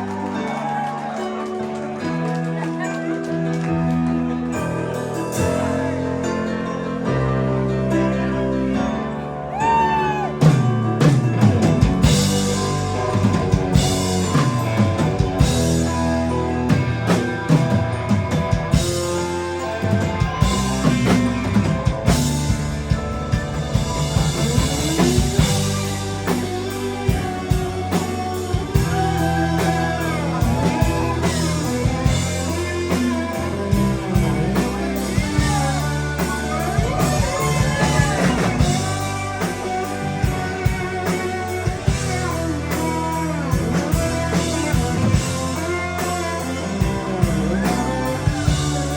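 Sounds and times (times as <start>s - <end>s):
drum kit: 0.0s - 7.9s, 9.5s - 48.9s
bass line: 0.0s - 48.9s
lead guitar with bends: 1.8s - 48.9s.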